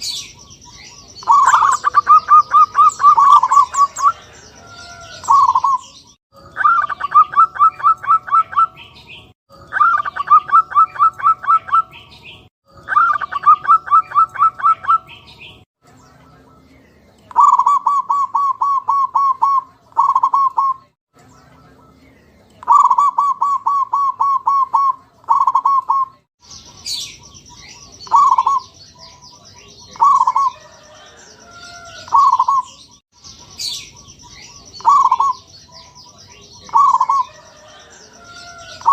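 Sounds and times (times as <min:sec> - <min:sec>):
doves cooing: 0:00.8 - 0:06.0, 0:06.6 - 0:08.8, 0:09.7 - 0:11.9, 0:12.9 - 0:15.1, 0:17.3 - 0:20.8, 0:22.6 - 0:26.1, 0:28.0 - 0:28.7, 0:29.9 - 0:32.8, 0:34.8 - 0:35.5, 0:36.6 - 0:38.9.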